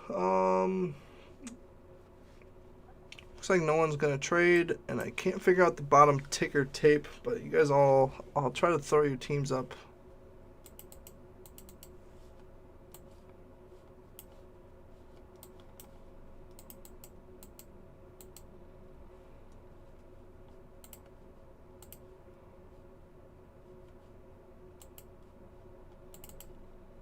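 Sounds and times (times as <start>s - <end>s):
low steady hum: 0.0s - 27.0s
computer keyboard typing: 10.6s - 11.9s, 26.1s - 26.6s.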